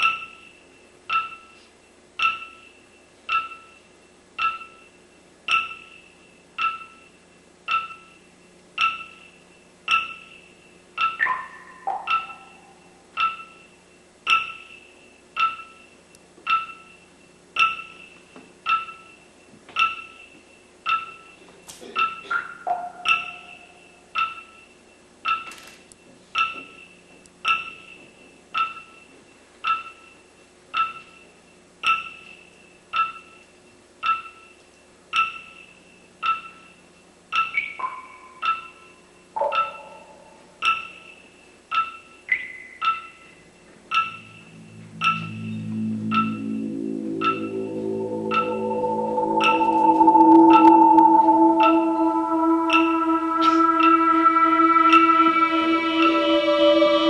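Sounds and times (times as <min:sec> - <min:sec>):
falling run of notes: 0:43.9 - 0:57.0
pitched percussion note strikes: 0:43.9 - 0:57.0.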